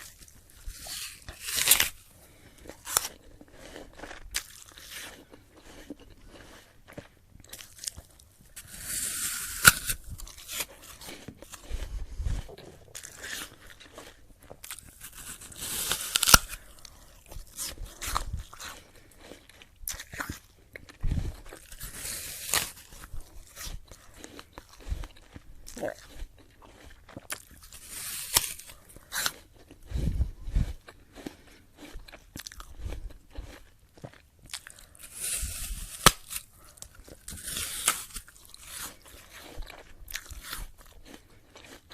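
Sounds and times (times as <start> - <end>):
crunching chewing: 0.0 - 41.9
crunchy apple bite: 0.0 - 41.9.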